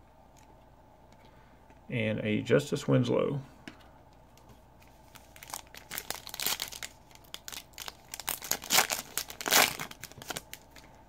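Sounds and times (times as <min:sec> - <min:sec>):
foil wrapper crinkling and tearing: 0:05.0 - 0:11.0.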